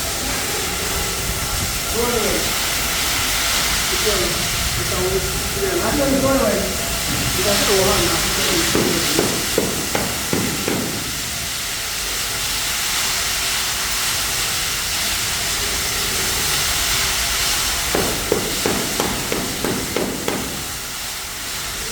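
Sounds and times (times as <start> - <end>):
steady hiss: 0.0 - 21.9
short sharp knocks: 8.4 - 11.4, 18.0 - 20.8.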